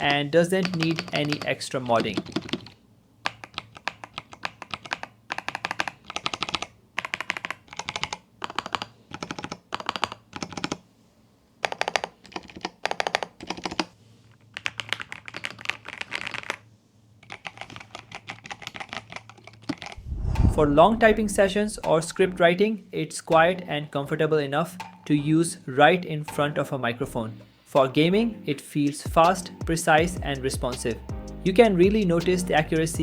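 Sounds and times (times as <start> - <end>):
mechanical keyboard typing: 0.0 - 10.8, 11.6 - 14.0, 14.6 - 16.6, 17.2 - 20.0.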